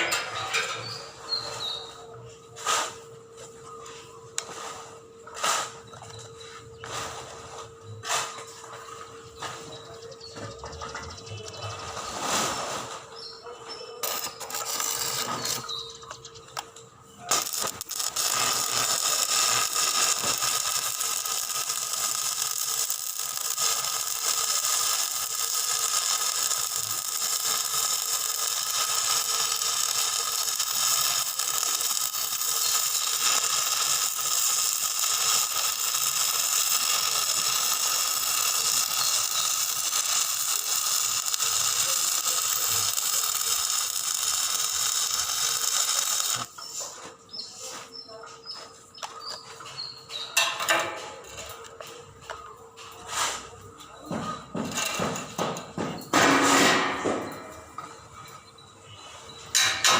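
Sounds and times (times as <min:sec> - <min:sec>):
arc welding crackle: 0:14.0 - 0:47.0, 0:50.1 - 0:59.9.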